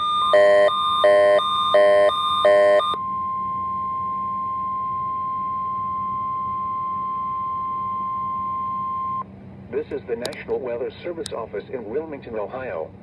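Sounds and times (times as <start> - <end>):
alternating two-part beep: 0.0 - 3.0
steady alarm tone: 0.0 - 9.2.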